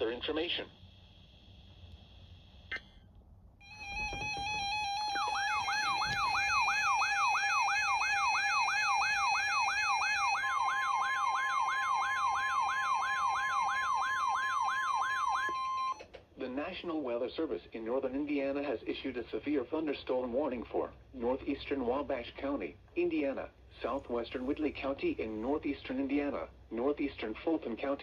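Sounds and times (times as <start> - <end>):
second steady tone: 3.6 - 8.6
steady electronic tone: 3.6 - 16.0
warbling siren-like tone: 3.6 - 16.0.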